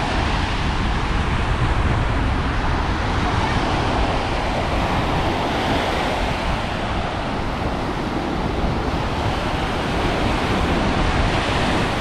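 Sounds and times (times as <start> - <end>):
ocean waves washing on beach: 0.0 - 12.0
wind buffeting microphone: 0.0 - 12.0.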